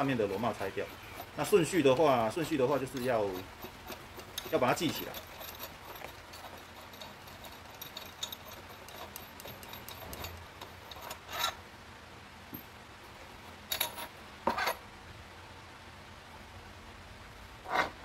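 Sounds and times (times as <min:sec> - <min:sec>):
hand tool clicking on metal: 0:00.0 - 0:11.2.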